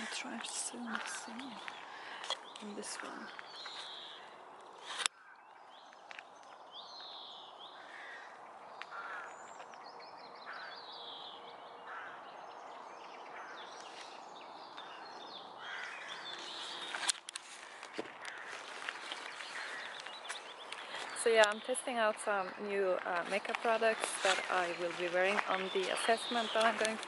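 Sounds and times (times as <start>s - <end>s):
birds calling and singing: 0.0s - 27.0s.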